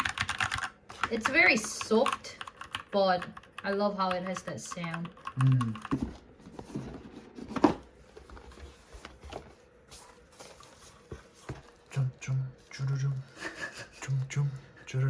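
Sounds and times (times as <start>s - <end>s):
keyboard clicks and taps: 0.0s - 6.2s.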